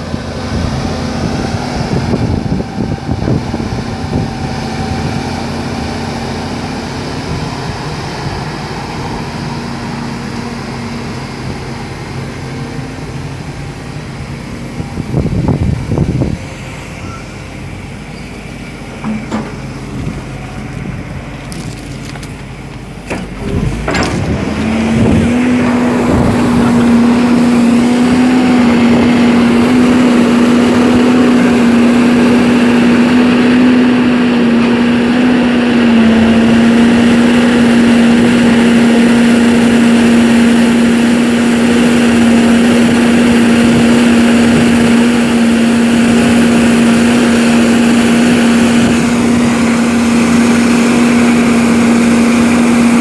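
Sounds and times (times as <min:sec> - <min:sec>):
excavator diesel engine revving: 0:00.0 - 0:53.0
engine knocks: 0:18.9 - 0:33.2.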